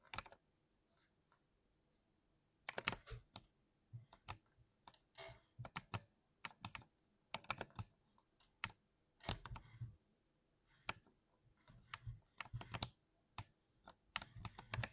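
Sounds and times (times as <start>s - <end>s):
keyboard typing: 2.7s - 3.4s, 5.0s - 7.9s, 11.9s - 12.9s, 14.2s - 14.9s.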